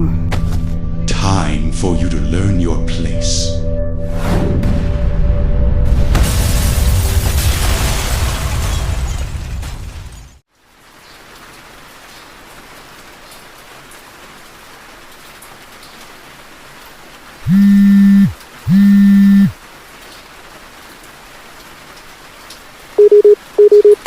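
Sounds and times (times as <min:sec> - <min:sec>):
steady rain falling: 0:10.4 - 0:24.0
low electronic buzzes: 0:17.5 - 0:19.6.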